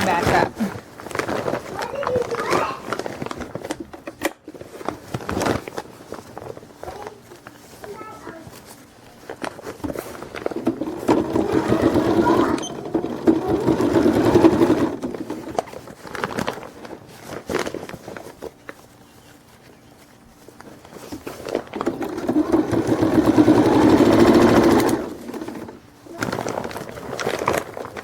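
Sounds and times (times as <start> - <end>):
sewing machine stitching: 10.3 - 15.8, 21.4 - 27.6.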